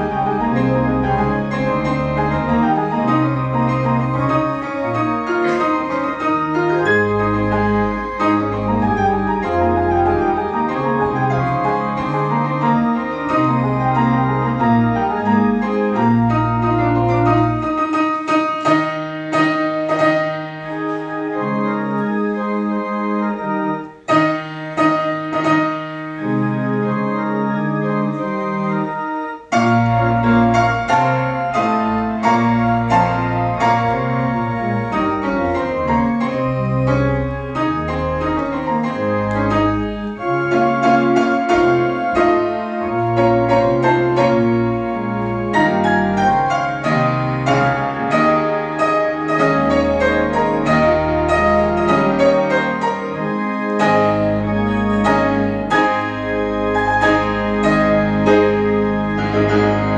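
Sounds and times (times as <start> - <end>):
church piano and organ music: 0.0 - 59.9.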